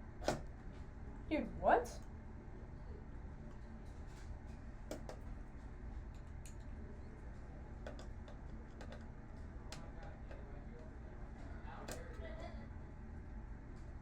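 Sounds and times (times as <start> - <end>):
steady low hum: 0.0 - 14.0
clicks and taps of parts: 7.8 - 9.1.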